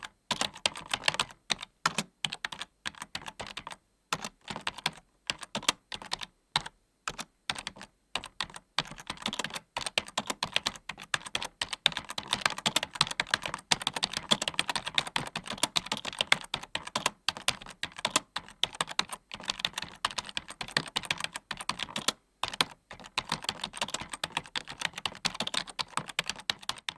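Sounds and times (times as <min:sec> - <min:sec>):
computer keyboard typing: 0:00.0 - 0:26.9.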